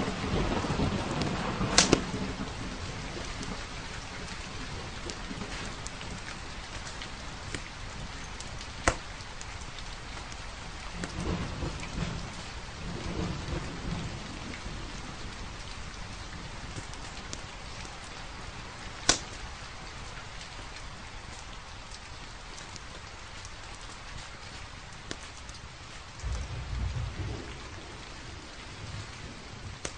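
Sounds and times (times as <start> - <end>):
steady rain falling: 0.0 - 29.9
wood fire popping: 0.2 - 12.5, 14.7 - 27.9, 29.0 - 29.9
low rumble: 26.2 - 29.8.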